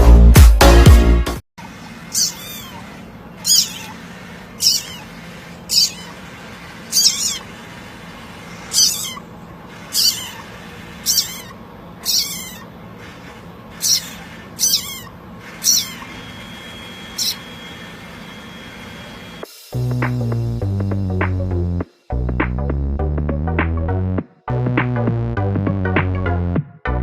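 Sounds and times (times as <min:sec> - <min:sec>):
small animal squeaky calls: 0:01.6 - 0:19.3
low background hum: 0:01.6 - 0:21.8.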